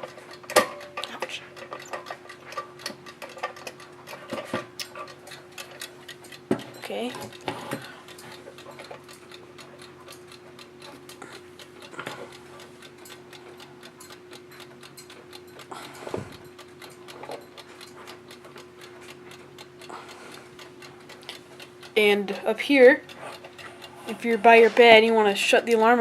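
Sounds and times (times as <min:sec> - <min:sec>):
alarm clock ticking: 0:00.0 - 0:26.0.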